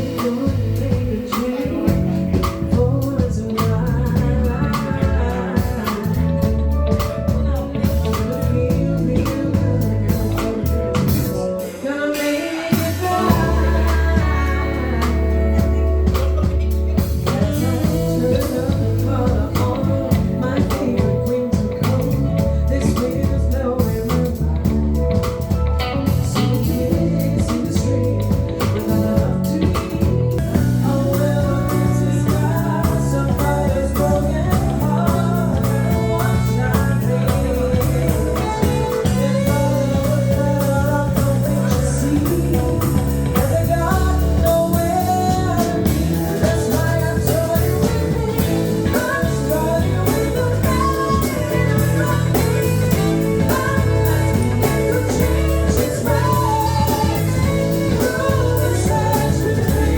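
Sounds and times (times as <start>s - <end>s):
blues rock band with singer: 0.0s - 59.9s.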